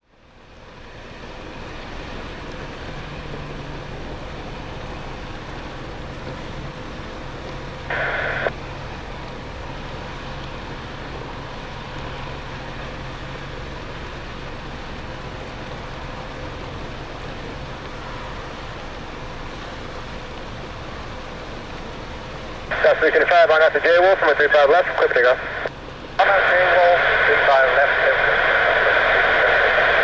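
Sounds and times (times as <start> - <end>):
airport rumble and hiss: 0.2 - 30.0
radio static burst: 7.9 - 8.6, 22.7 - 30.0.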